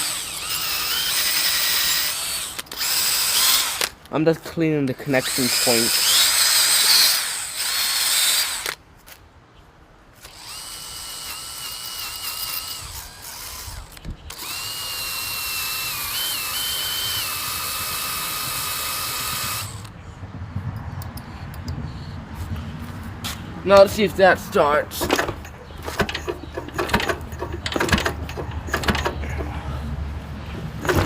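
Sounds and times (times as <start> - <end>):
small power tool whining: 0.0 - 3.9, 5.2 - 8.8, 10.2 - 19.9.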